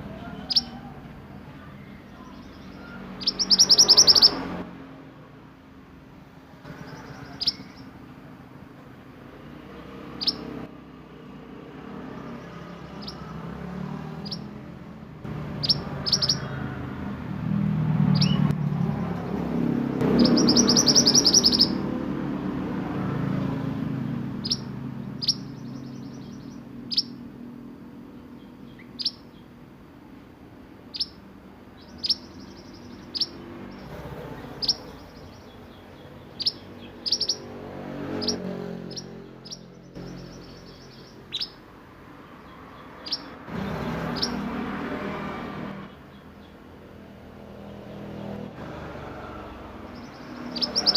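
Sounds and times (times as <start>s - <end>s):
bird high chirps and trill: 0.2s - 4.6s, 6.7s - 8.0s, 10.0s - 10.7s, 12.4s - 13.4s, 14.1s - 14.6s, 15.5s - 16.7s, 18.0s - 18.5s, 20.0s - 22.0s, 24.3s - 27.3s, 28.1s - 29.6s, 30.9s - 41.7s, 42.4s - 44.5s, 49.9s - 50.9s.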